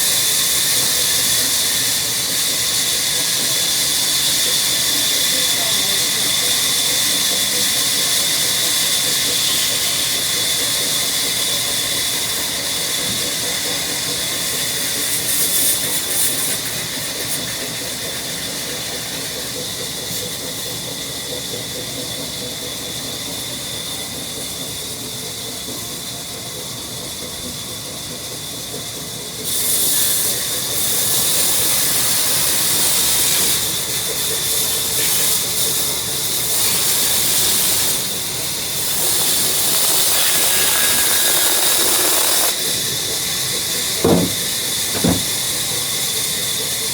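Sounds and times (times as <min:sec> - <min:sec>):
woodworking machine cutting wood: 0:00.0 - 0:20.6, 0:43.2 - 0:45.9.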